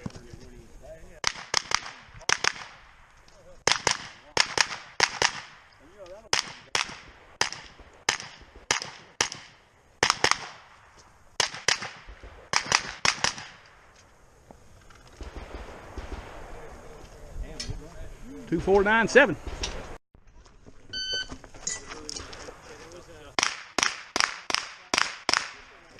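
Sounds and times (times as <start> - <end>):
rifle shots: 1.2 - 13.9, 15.1 - 17.0, 19.3 - 20.0, 23.4 - 25.8.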